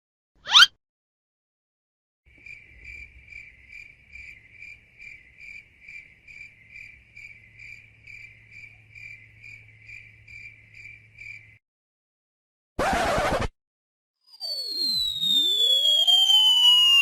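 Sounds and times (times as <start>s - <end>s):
cricket chirping: 2.3s - 11.6s.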